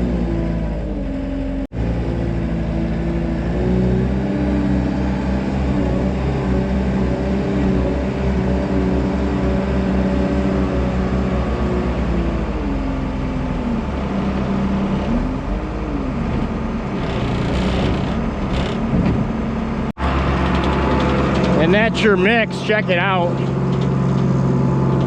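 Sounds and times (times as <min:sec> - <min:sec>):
tractor engine running: 0:00.0 - 0:25.0
feed mixer churning hay: 0:16.9 - 0:19.0, 0:20.0 - 0:25.0.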